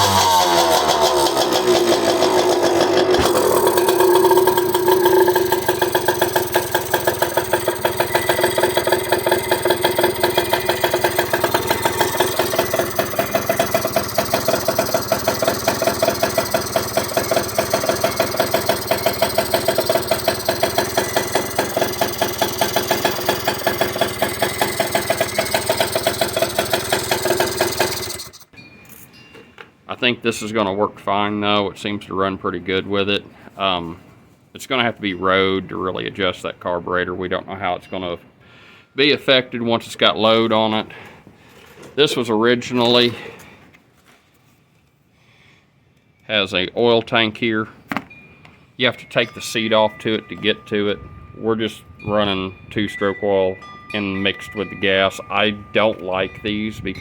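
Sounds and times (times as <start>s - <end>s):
two-stroke engine idling: 0.0s - 28.5s.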